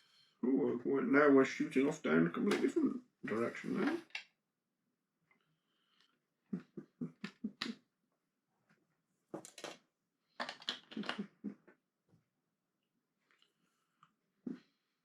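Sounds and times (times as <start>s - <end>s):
plastic bricks clicking and rattling: 10.4s - 11.2s.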